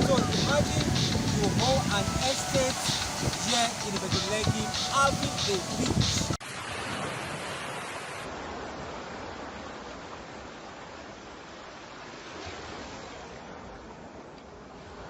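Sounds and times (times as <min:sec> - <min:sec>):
ocean waves washing onto beach: 0:00.0 - 0:15.0.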